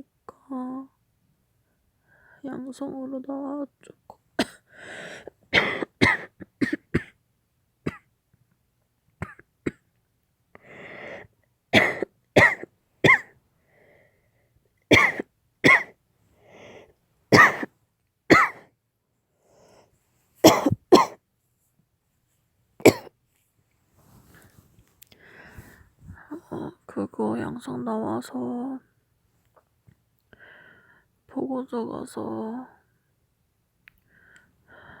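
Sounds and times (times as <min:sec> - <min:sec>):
woman coughing hard: 0:04.4 - 0:04.7, 0:05.5 - 0:07.2, 0:07.9 - 0:08.1, 0:09.2 - 0:09.8, 0:11.7 - 0:13.3, 0:14.9 - 0:16.0, 0:17.3 - 0:17.7, 0:18.3 - 0:18.7, 0:20.4 - 0:21.2, 0:22.8 - 0:23.1.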